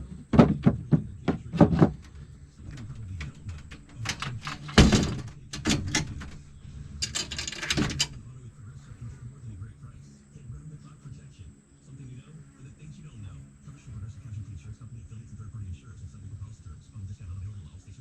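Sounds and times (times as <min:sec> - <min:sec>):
knocks and thuds of handling: 0:00.0 - 0:08.2
rattling clatter: 0:00.4 - 0:08.4.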